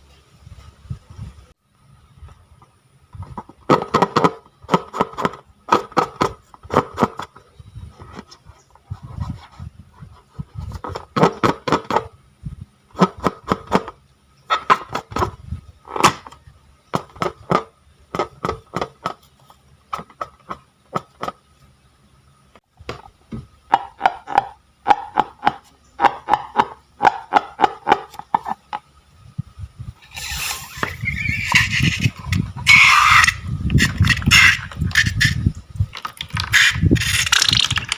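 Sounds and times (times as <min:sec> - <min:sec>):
hissing squeaky sound: 0:30.0 - 0:35.6, 0:36.3 - 0:37.4.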